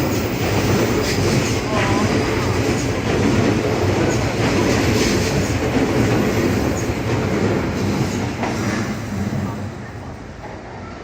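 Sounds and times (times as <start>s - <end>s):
electric train rumbling on rails: 0.0s - 11.0s.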